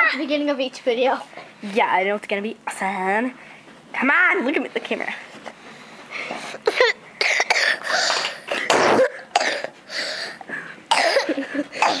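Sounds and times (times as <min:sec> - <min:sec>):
boy coughing: 0:06.6 - 0:10.3, 0:10.9 - 0:12.0.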